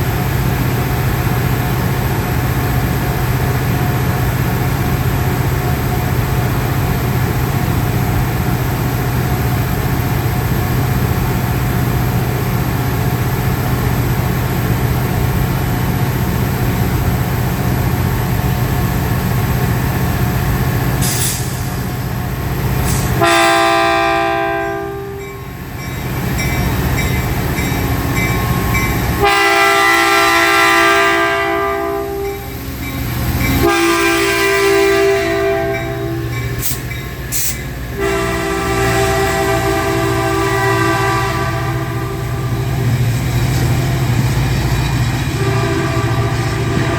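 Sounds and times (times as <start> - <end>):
train rumbling by: 0.0 - 46.9
train horn blasts: 23.2 - 25.4, 28.3 - 32.5, 33.6 - 36.4, 37.9 - 42.8, 45.3 - 46.9.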